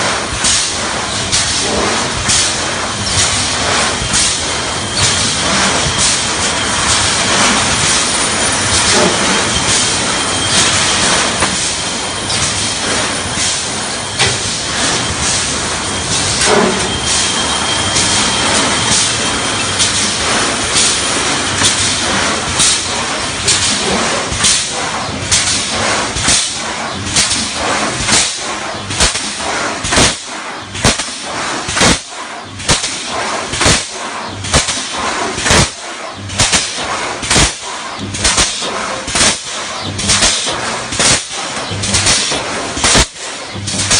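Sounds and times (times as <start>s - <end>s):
welding machine hiss and rattle: 0.0s - 43.9s
sharp clicks and knocks: 12.3s - 15.5s, 17.9s - 30.2s.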